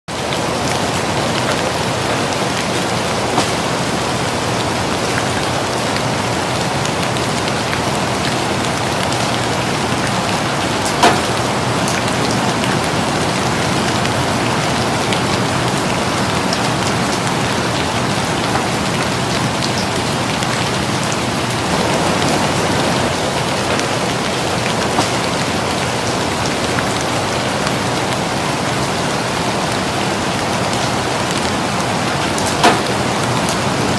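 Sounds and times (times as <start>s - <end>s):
heavy rain hiss: 0.1s - 33.9s
raindrop taps: 0.2s - 33.9s.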